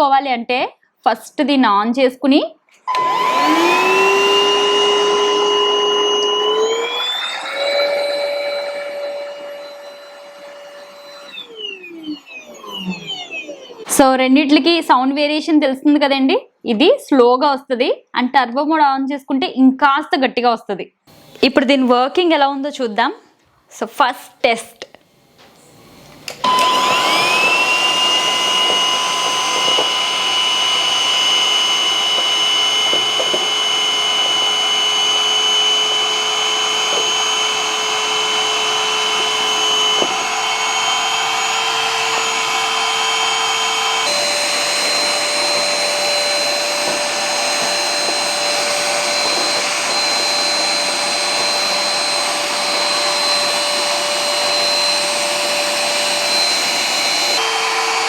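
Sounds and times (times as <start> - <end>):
vacuum cleaner motor whine: 2.8 - 14.1, 21.1 - 22.4, 25.0 - 58.0.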